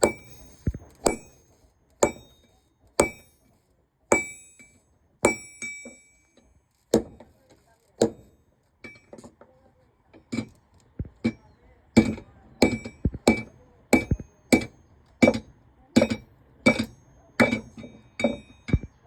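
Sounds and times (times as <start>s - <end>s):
hammer striking steel on anvil: 0.0s - 7.4s, 8.0s - 9.2s, 12.0s - 19.0s
light hammer taps: 12.0s - 19.0s.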